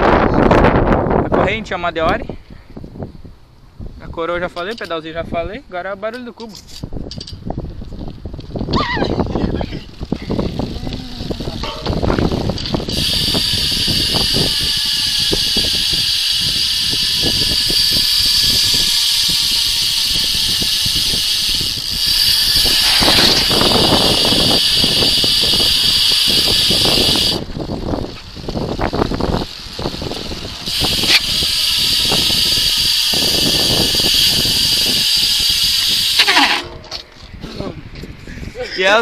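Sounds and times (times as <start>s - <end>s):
bicycle freehub ratchet clicking: 6.7s - 37.0s.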